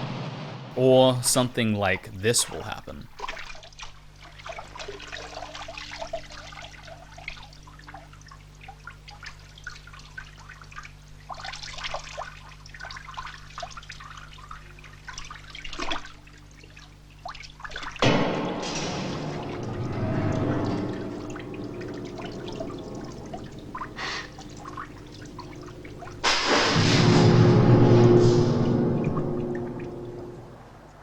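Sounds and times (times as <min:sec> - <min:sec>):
water trickling and dripping: 0:03.1 - 0:18.1, 0:18.8 - 0:26.5.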